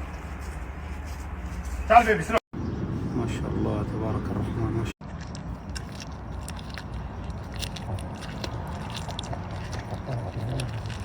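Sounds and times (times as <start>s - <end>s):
animal chewing and crunching: 5.0s - 11.0s.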